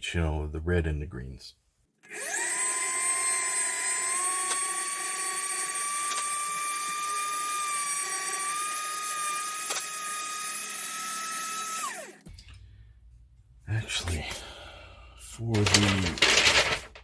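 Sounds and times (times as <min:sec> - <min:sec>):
rotary tool high whine: 0:02.1 - 0:12.2.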